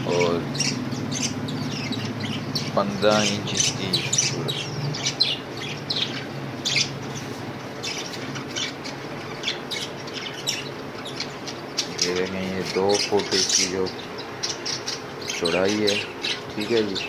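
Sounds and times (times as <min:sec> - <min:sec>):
budgerigars chirping and squawking: 0:00.0 - 0:17.0
low steady hum: 0:00.0 - 0:17.0.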